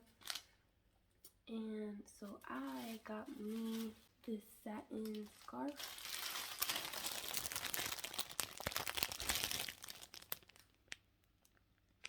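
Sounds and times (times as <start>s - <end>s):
packaging crinkling: 0.2s - 0.5s, 5.1s - 12.0s.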